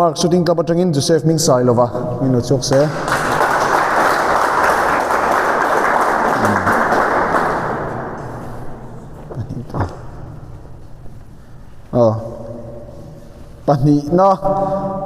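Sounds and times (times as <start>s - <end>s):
audience applauding: 2.7s - 8.4s.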